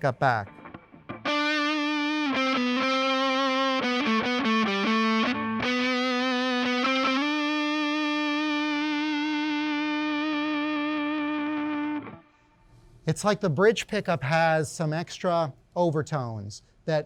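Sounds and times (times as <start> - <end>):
overdriven electric guitar: 0.0 - 12.4.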